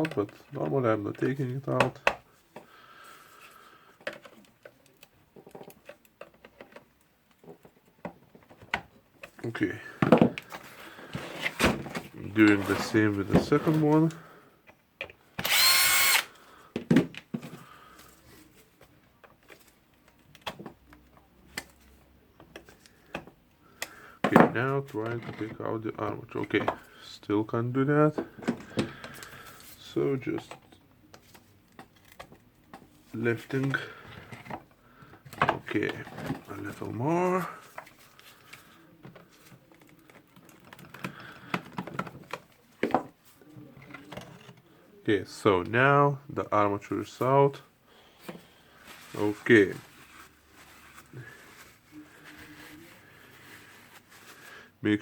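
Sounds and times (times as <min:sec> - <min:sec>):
cordless screwdriver motor: 0:15.4 - 0:16.3.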